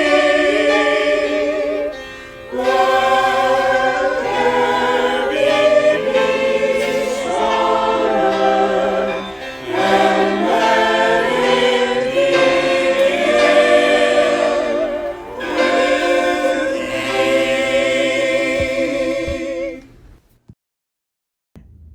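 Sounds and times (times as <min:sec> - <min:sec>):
choir singing a hymn: 0:00.0 - 0:20.0.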